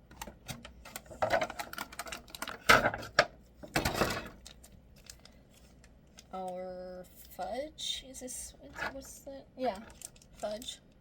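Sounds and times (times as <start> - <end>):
toy pieces rustling and clicking: 9.6 - 10.9.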